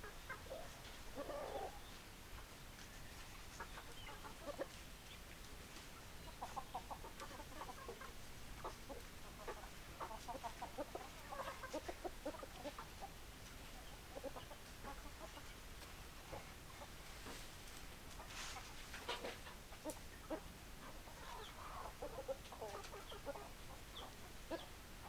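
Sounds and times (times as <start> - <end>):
chickens clucking: 0.0 - 25.0.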